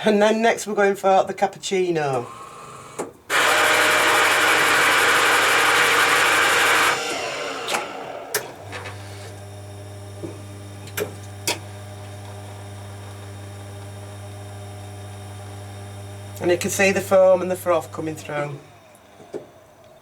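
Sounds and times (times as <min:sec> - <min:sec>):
coffee machine grinding beans: 0:03.3 - 0:19.0
pump hum: 0:06.4 - 0:19.2.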